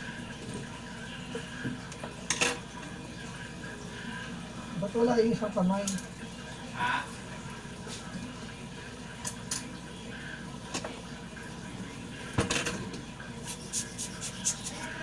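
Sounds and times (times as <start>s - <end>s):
steady background hum: 0.0s - 15.0s.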